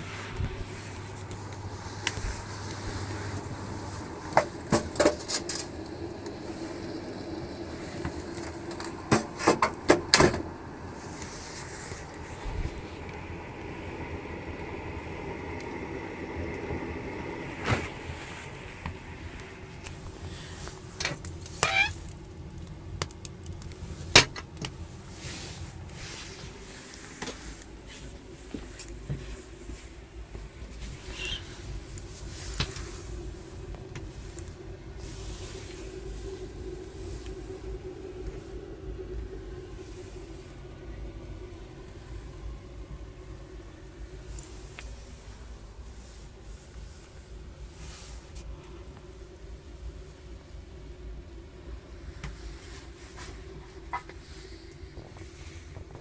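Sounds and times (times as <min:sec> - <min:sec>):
steady low hum: 0:00.0 - 0:56.0
scraping squeak: 0:21.6 - 0:22.0, 0:31.0 - 0:31.6.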